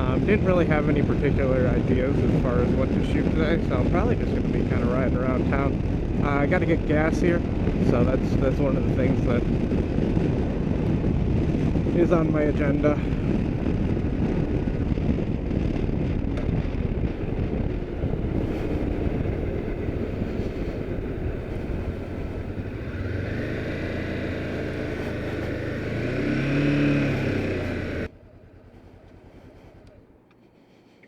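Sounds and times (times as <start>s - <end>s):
motorcycle engine: 0.0s - 31.0s
wind and road rush: 0.0s - 31.0s.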